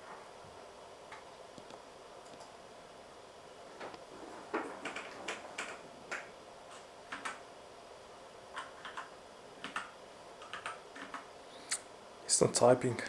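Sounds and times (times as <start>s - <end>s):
keyboard keys clicking: 4.8s - 7.4s, 8.6s - 11.3s.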